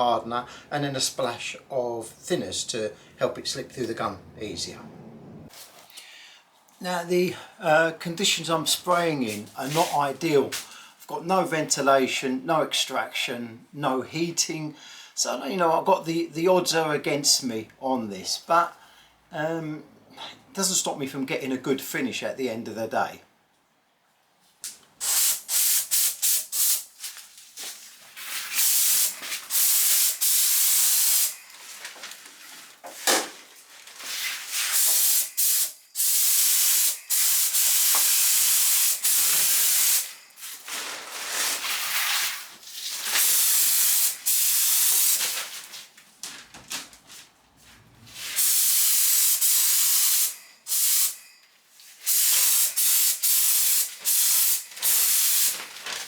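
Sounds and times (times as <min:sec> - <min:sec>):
paint spray gun hissing: 0:25.0 - 0:26.9, 0:28.4 - 0:31.3, 0:34.6 - 0:40.2, 0:43.2 - 0:45.2, 0:48.3 - 0:51.2, 0:52.0 - 0:55.6.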